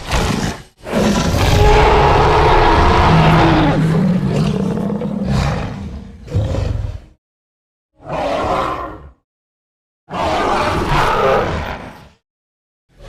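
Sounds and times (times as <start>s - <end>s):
creature roaring: 0.0s - 7.1s, 8.0s - 9.2s, 10.1s - 12.1s.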